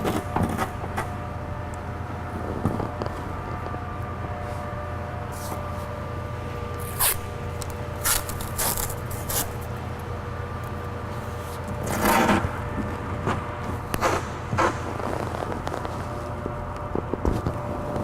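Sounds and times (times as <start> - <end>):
background hum: 0.0 - 18.0
masking tape ripping: 6.8 - 7.3, 8.0 - 9.7.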